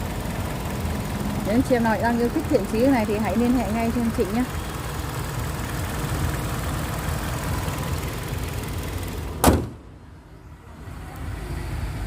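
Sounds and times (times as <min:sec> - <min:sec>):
car engine idling: 0:00.0 - 0:12.0
heavy door slam: 0:09.4 - 0:09.8.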